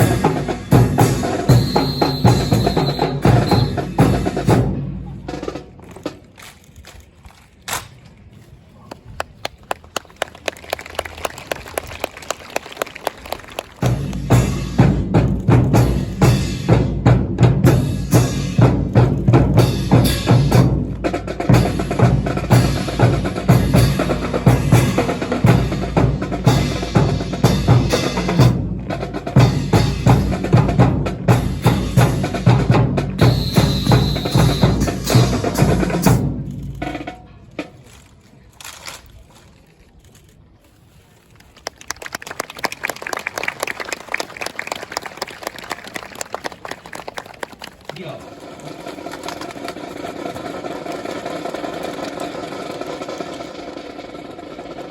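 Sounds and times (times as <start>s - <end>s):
snare and bass drums playing: 0.0s - 6.2s, 13.8s - 37.9s.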